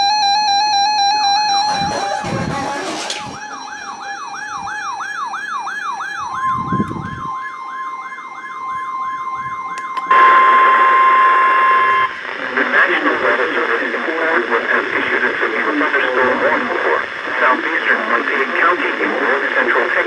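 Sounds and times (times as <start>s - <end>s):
rising siren-like alert sweep: 0.0s - 12.2s
steady alarm tone: 0.0s - 12.4s.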